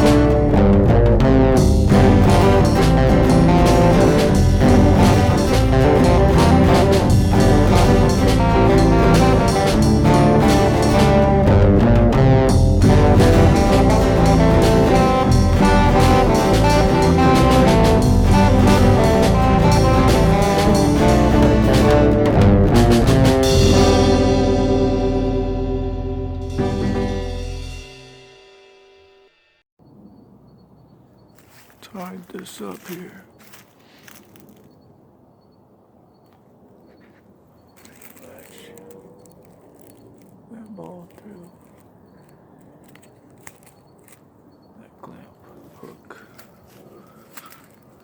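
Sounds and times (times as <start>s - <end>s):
intro soundtrack music: 0.0s - 29.6s.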